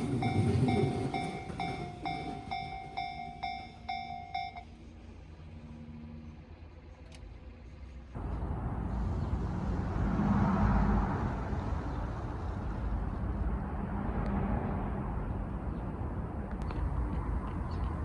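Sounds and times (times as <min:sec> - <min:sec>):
train wheels rumbling on rails: 0:00.0 - 0:05.4.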